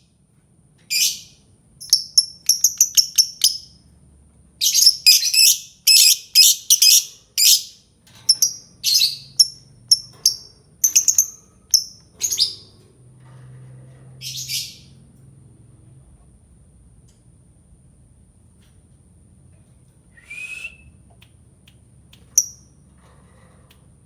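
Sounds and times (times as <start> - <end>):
bird chirping shrilly: 4.6 - 12.7.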